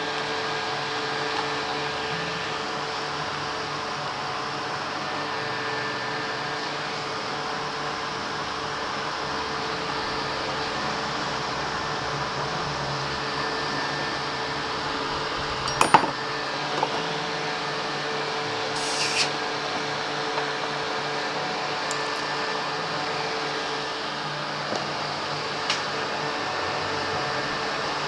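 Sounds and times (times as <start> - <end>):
electric fan humming: 0.0 - 28.0
short hiss: 18.8 - 19.3.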